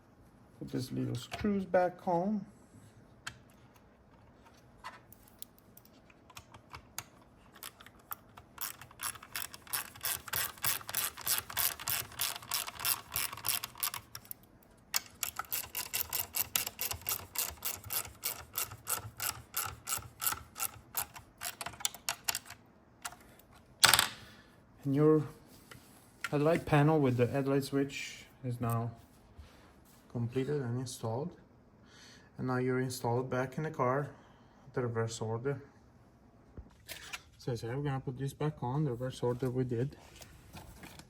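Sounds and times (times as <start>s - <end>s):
hand ratchet clicking: 8.6s - 14.3s, 15.0s - 22.4s.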